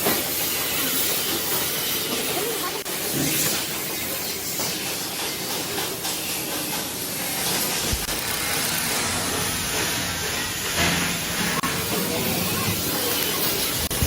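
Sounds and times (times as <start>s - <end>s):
steady loud hiss: 0.0s - 14.0s.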